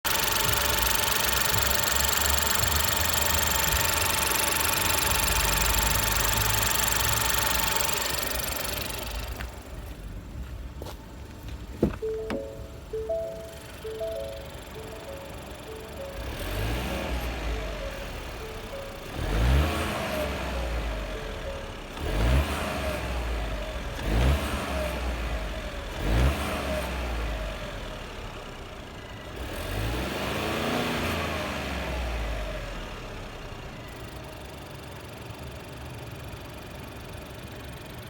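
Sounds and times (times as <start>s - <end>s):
car engine revving: 16.1s - 27.6s.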